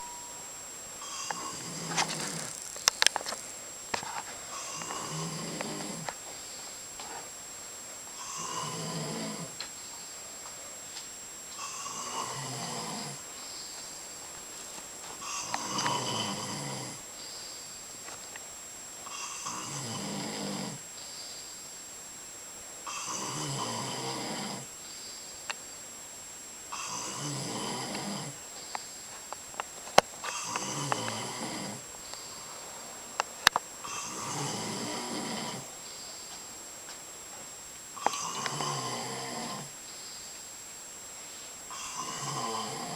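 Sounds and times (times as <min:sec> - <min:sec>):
person snoring: 0:01.0 - 0:02.6, 0:04.5 - 0:06.1, 0:08.2 - 0:09.6, 0:11.6 - 0:13.2, 0:15.2 - 0:17.0, 0:19.1 - 0:20.8, 0:22.9 - 0:24.7, 0:26.7 - 0:28.4, 0:30.3 - 0:31.9, 0:33.8 - 0:35.7, 0:38.0 - 0:39.7, 0:41.7 - 0:42.9.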